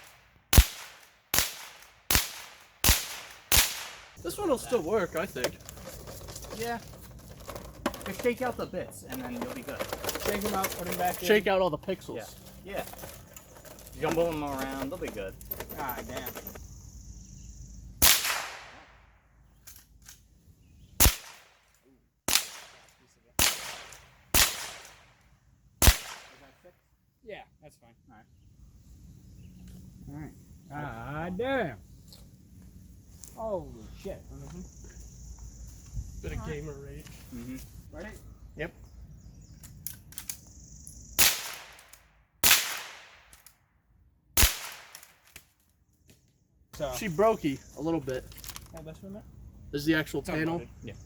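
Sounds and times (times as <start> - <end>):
shotgun shots: 0.0 - 4.2, 18.0 - 19.0, 21.0 - 21.6, 22.3 - 25.2, 25.8 - 26.5, 41.2 - 43.4, 44.4 - 45.2
gunshots with echo: 23.4 - 24.9, 25.8 - 26.5.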